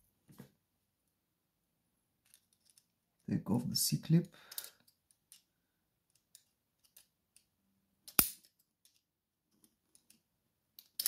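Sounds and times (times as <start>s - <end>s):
sharp metallic snap: 8.1s - 8.5s.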